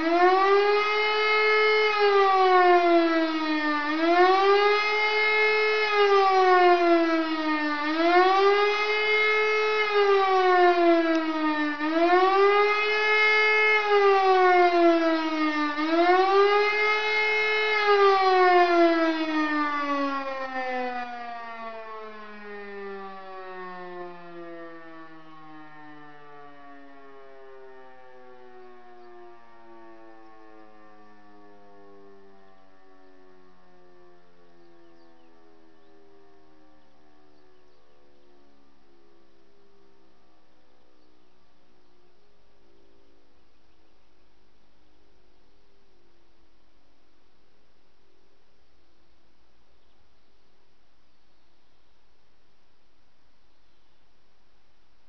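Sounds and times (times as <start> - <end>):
rising and falling siren howl: 0.0 - 43.5.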